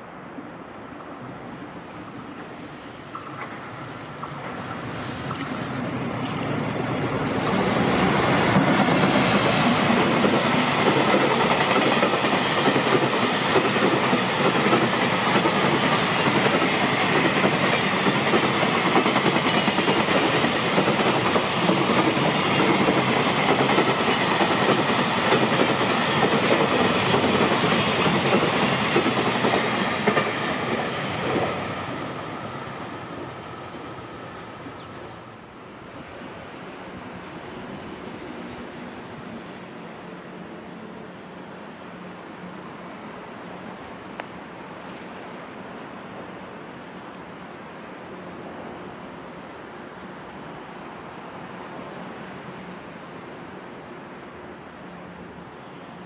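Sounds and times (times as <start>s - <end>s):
freight train passing: 0.0s - 56.0s
high whine of wheels on rails: 0.0s - 56.0s.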